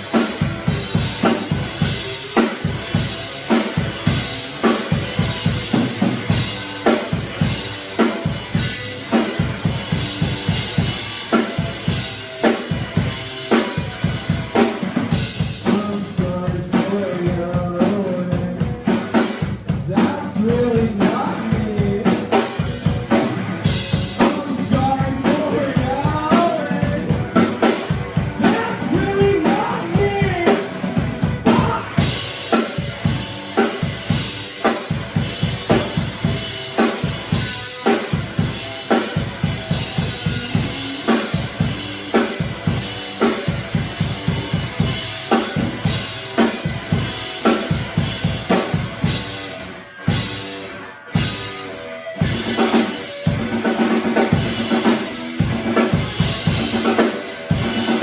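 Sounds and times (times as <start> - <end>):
drum kit beat: 0.0 - 58.0
live band playing: 0.0 - 58.0
person singing: 15.6 - 18.7, 19.9 - 22.6, 24.2 - 27.4, 28.4 - 30.7, 31.4 - 32.2.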